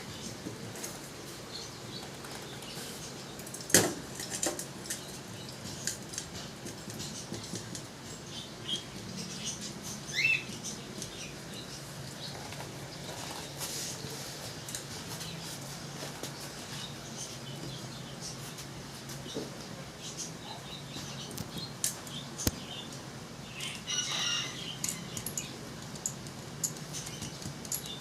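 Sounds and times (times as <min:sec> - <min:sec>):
small hard objects clicking: 0:24.8 - 0:28.0.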